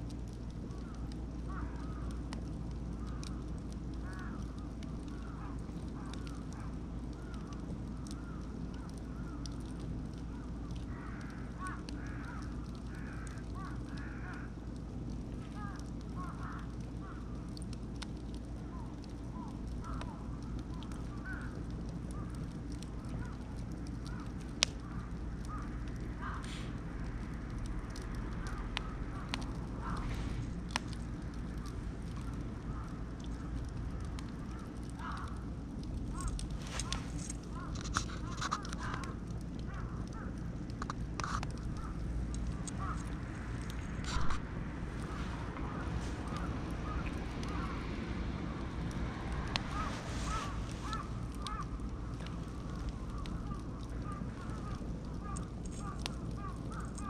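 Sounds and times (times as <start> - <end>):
steady low rumble: 0.0 - 57.0
wood fire crackling and popping: 0.0 - 57.0
birds calling: 45.0 - 48.0, 49.5 - 57.0.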